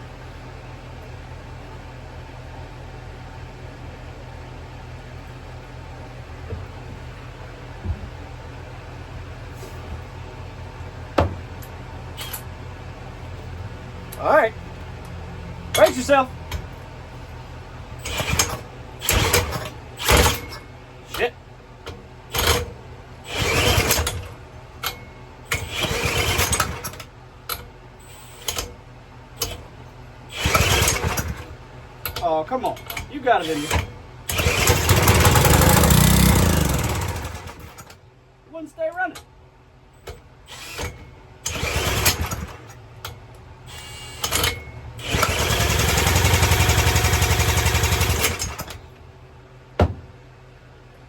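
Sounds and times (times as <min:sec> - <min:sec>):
drill spinning small engine: 0:18.0 - 0:20.6, 0:23.3 - 0:24.3, 0:25.5 - 0:27.0, 0:30.3 - 0:31.4, 0:33.3 - 0:37.9, 0:40.5 - 0:42.7, 0:43.7 - 0:48.8
small engine sputtering: 0:30.3 - 0:31.4, 0:33.5 - 0:37.9, 0:40.6 - 0:42.6, 0:45.0 - 0:48.8.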